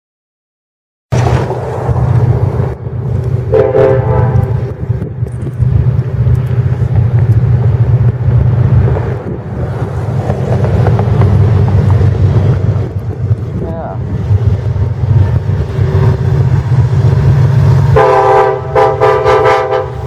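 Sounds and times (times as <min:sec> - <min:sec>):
diesel locomotive rumbling: 0:01.1 - 0:20.0
locomotive horn blast: 0:03.5 - 0:04.7, 0:17.7 - 0:20.0.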